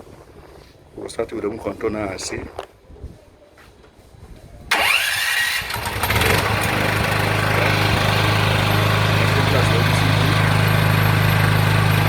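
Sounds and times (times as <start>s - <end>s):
electric starter cranking: 4.7s - 12.0s
generator engine running: 4.7s - 12.0s.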